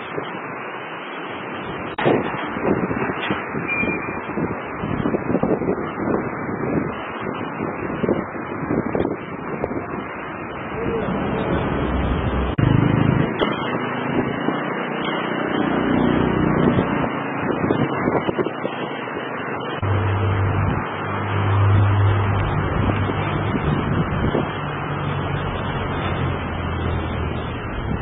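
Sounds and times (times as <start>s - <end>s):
road traffic: 0.0s - 28.0s
low engine hum: 10.3s - 14.6s, 19.8s - 28.0s.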